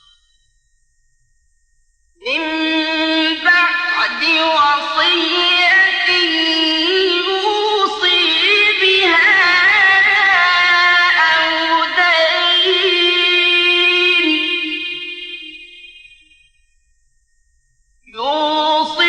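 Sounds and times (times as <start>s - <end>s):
person reciting with long ornamented note: 2.2s - 16.4s, 18.1s - 19.0s.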